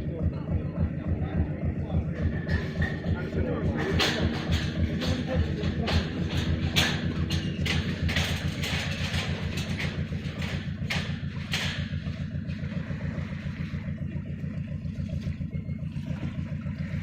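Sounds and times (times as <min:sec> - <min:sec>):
boat engine humming: 0:00.0 - 0:17.0
water splashing: 0:00.1 - 0:17.0.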